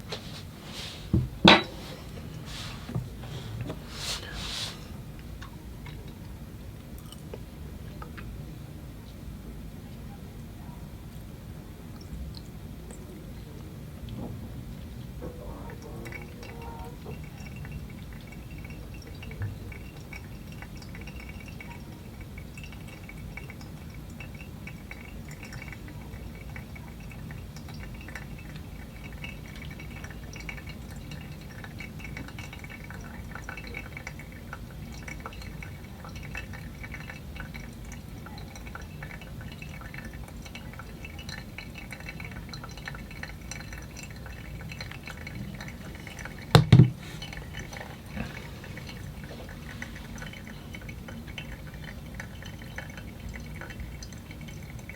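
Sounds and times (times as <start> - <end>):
water trickling through coffee grounds: 0.0 - 54.9
coffee dripping into glass: 17.2 - 47.7.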